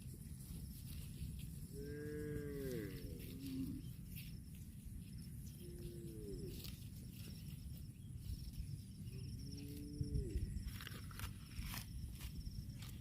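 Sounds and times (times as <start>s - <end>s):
cow mooing: 1.7s - 3.9s.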